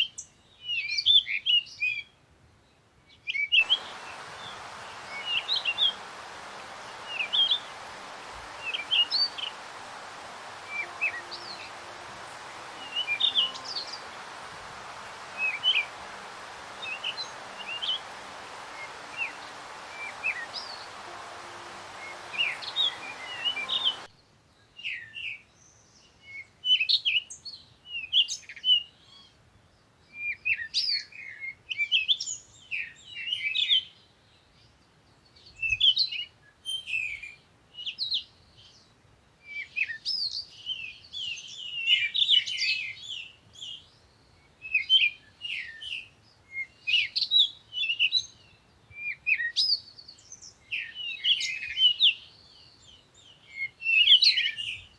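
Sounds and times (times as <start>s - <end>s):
songbirds chirping and singing: 3.6s - 24.1s
steady hiss: 3.6s - 24.1s.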